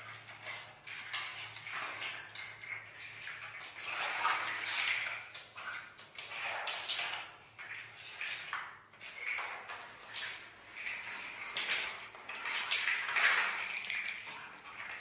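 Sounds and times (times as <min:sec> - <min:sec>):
water sloshing: 0:09.1 - 0:15.0.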